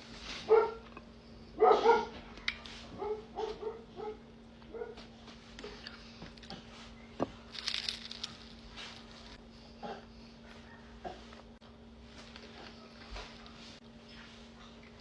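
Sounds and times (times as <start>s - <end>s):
crisp crunching from chewing: 7.5s - 9.4s.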